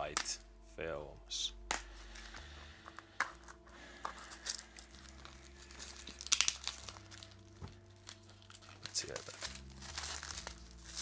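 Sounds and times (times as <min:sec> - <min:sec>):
plastic wrap crinkling and tearing: 0:02.9 - 0:11.0.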